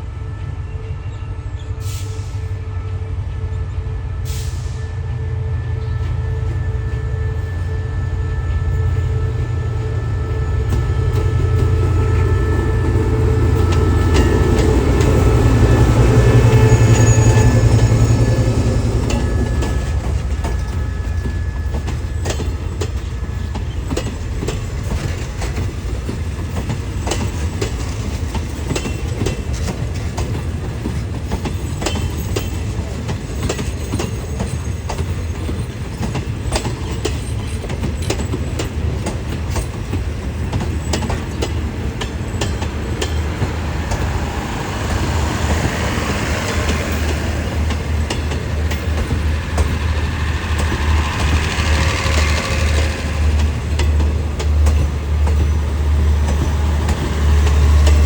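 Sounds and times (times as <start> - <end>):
diesel locomotive engine: 0.0 - 58.0
train wheels clacking on rail joints: 7.7 - 58.0.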